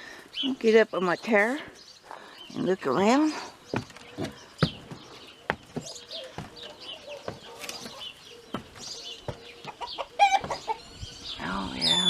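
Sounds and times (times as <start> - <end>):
footsteps climbing steps: 3.4 - 10.8
chickens clucking: 3.5 - 12.0.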